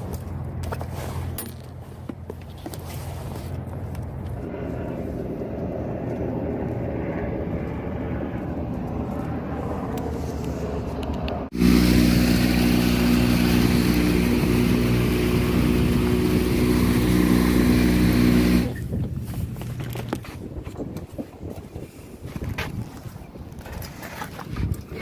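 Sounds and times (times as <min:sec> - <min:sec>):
engine running: 0:00.0 - 0:18.9.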